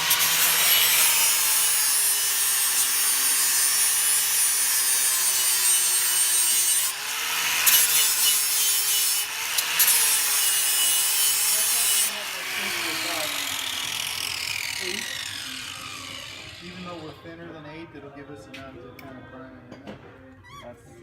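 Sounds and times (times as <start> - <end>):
grinder motor whine: 10.6 - 17.1.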